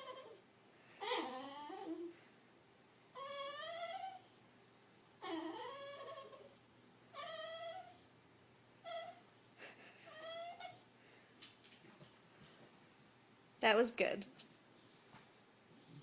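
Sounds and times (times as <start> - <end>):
dog whining: 0.0 - 2.2, 3.1 - 4.4, 5.2 - 8.1, 8.8 - 10.9.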